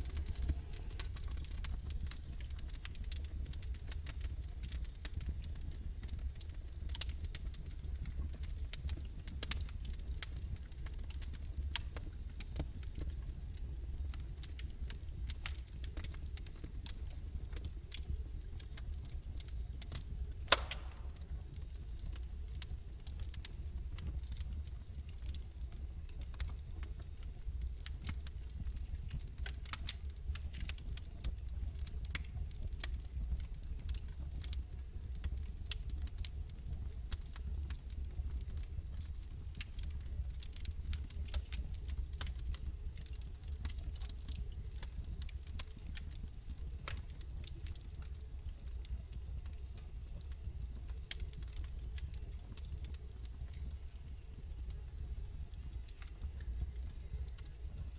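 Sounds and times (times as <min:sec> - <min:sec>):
log fire crackling: 0:00.0 - 0:57.9
low steady rumble: 0:00.0 - 0:57.9
loud sharp pop: 0:20.5 - 0:21.1
small pops: 0:20.5 - 0:21.3.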